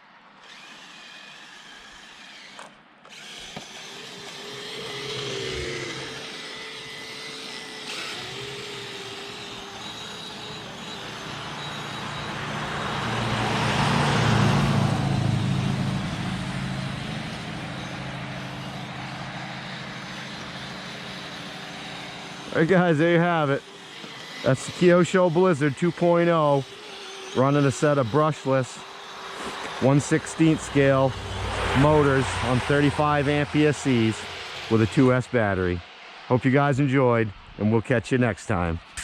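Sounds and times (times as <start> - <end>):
electric motor whine: 0.4 - 35.8.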